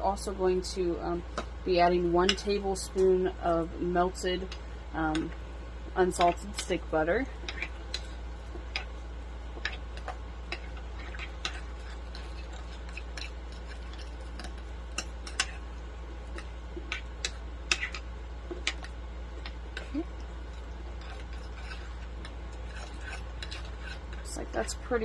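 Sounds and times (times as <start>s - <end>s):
steady low hum: 0.0s - 25.0s
spoon stirring thick mixture: 6.1s - 24.9s.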